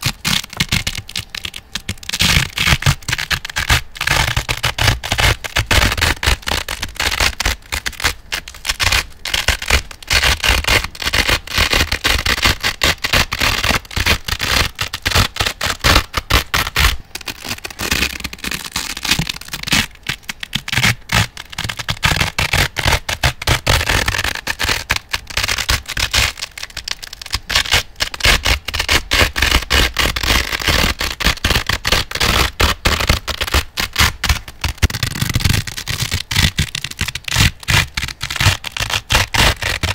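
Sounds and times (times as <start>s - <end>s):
velcro being ripped: 0.0s - 39.9s.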